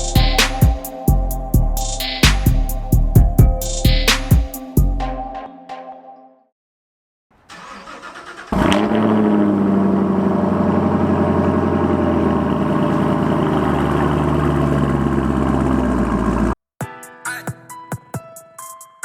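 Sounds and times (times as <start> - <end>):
car engine starting and idling: 7.4 - 16.6.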